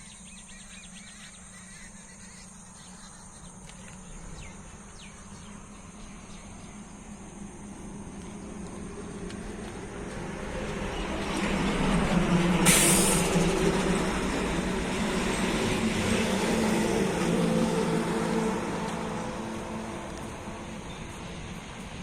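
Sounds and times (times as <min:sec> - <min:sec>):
vehicle engine hum passing: 0:00.4 - 0:22.0
short sharp hiss: 0:12.6 - 0:13.5.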